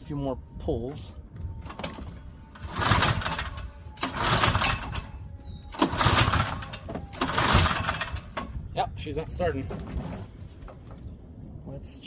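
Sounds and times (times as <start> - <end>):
recoil starter rope pulls: 1.7 - 8.5.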